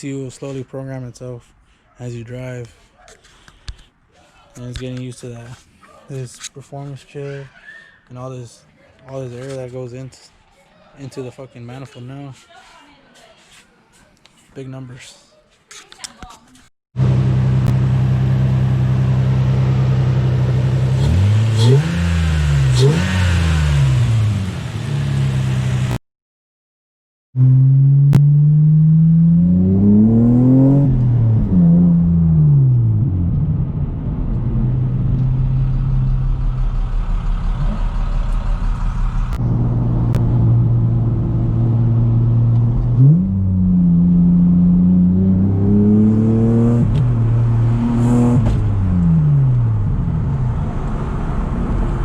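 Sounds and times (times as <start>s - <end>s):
car engine revving: 17.0s - 26.0s, 27.4s - 52.0s.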